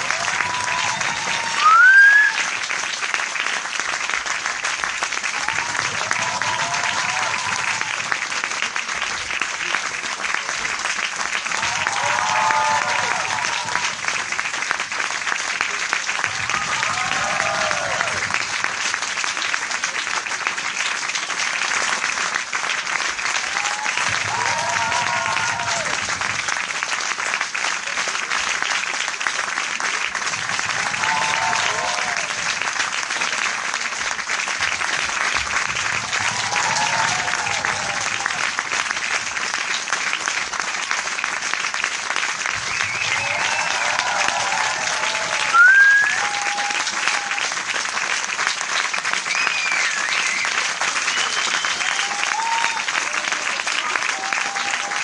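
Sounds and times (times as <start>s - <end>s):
crowd applause: 0.0s - 55.0s
short rising whistle: 1.6s - 2.4s, 45.5s - 46.5s.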